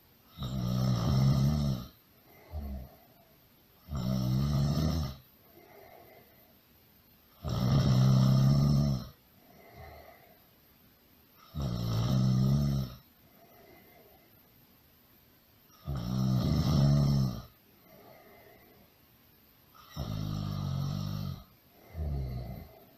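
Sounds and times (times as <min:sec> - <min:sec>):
loud snoring: 0:00.3 - 0:03.0, 0:03.8 - 0:06.0, 0:07.4 - 0:10.2, 0:11.4 - 0:13.1, 0:15.7 - 0:18.5, 0:19.8 - 0:22.8
soft breath: 0:02.1 - 0:03.6, 0:05.3 - 0:06.9, 0:09.3 - 0:10.7, 0:13.0 - 0:14.7, 0:17.5 - 0:19.9, 0:21.0 - 0:22.9.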